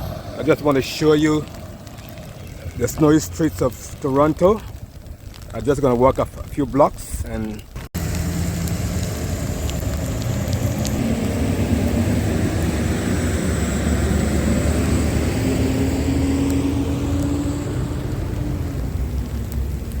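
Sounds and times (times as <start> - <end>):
vehicle engine humming: 0.0 - 3.6, 7.8 - 20.0
street noise: 0.0 - 5.6, 7.5 - 20.0.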